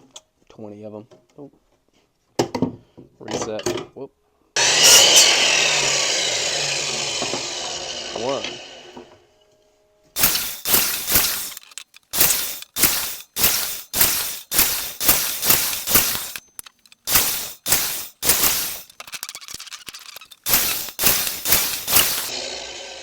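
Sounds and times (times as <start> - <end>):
power saw cutting wood: 4.6 - 9.1, 10.2 - 23.0.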